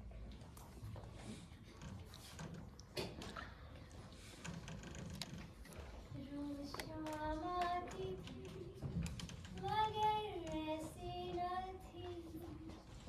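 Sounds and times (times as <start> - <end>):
faint clicks: 6.6 - 13.0.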